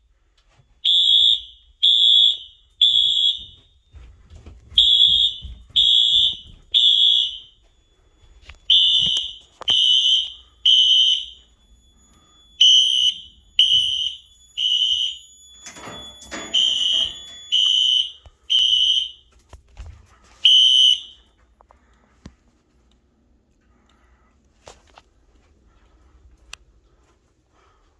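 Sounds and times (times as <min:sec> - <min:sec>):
fire alarm high-pitched beeps: 0:00.5 - 0:19.5, 0:20.4 - 0:21.6.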